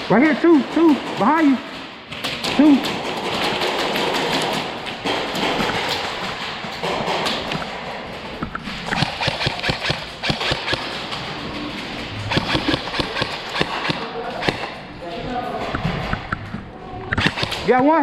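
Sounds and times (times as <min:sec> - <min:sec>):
airsoft guns firing: 0:00.1 - 0:08.0, 0:08.9 - 0:11.4, 0:12.2 - 0:14.9, 0:17.2 - 0:17.9.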